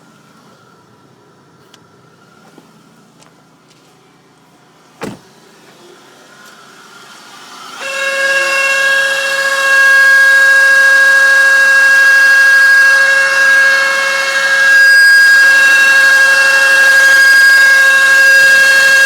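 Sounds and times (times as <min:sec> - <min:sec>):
cooling fan high-pitched whine: 0:04.4 - 0:19.0.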